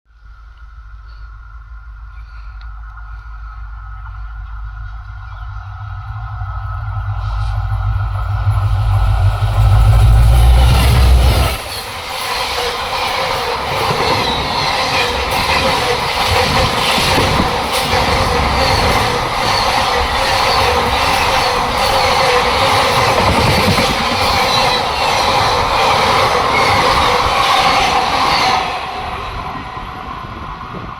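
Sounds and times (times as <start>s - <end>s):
deep train rumble: 0.1s - 30.9s
train passing at speed: 0.2s - 30.9s
wheels clacking over rail joints: 7.9s - 30.6s.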